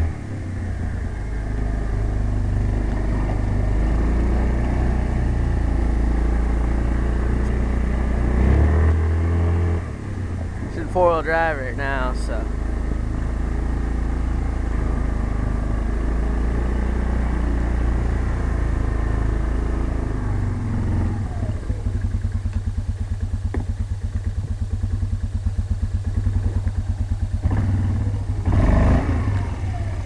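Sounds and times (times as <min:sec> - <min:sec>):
atv engine running: 0:00.0 - 0:30.0.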